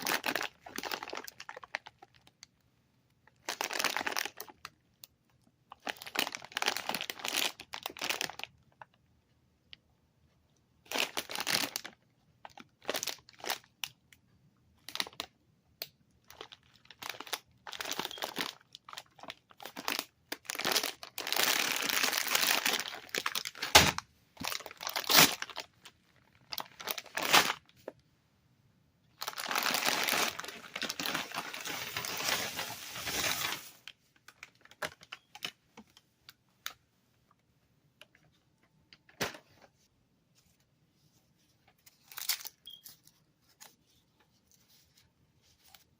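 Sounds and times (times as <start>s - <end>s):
plastic packaging crinkling: 0.0s - 2.4s, 3.2s - 4.8s, 5.7s - 9.0s, 10.9s - 14.0s, 14.8s - 15.3s, 16.2s - 28.0s, 29.2s - 35.6s, 41.9s - 43.7s.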